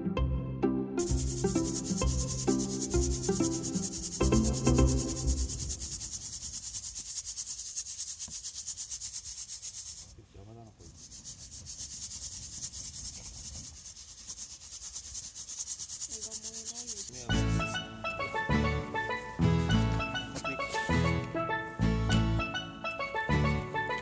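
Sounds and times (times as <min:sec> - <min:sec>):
insects chirping: 0:01.0 - 0:10.1, 0:11.0 - 0:17.3.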